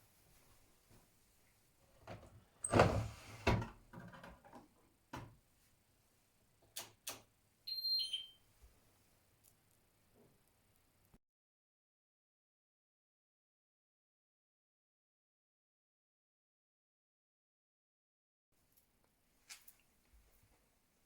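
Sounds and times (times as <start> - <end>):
washing machine clunk: 2.1 - 4.4
sharp clicks: 6.8 - 7.2.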